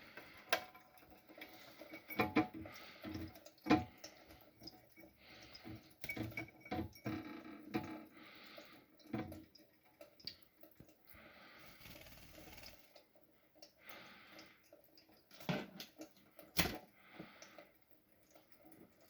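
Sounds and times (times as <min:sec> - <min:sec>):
light clicks and taps: 0:07.7 - 0:11.2.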